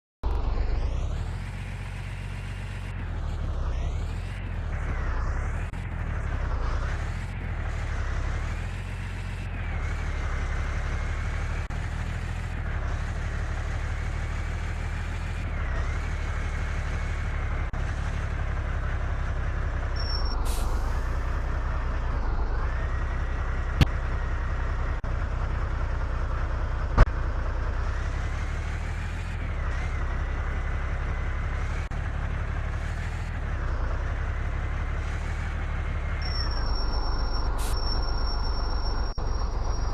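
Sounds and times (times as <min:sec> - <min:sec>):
model truck motor whine: 0:00.3 - 0:39.9
low drone: 0:20.0 - 0:25.4, 0:36.2 - 0:39.9.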